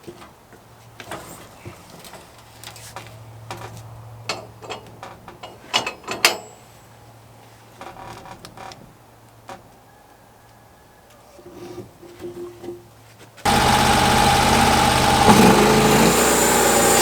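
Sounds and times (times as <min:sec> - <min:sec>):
sawmill idling hum: 0:13.5 - 0:17.0.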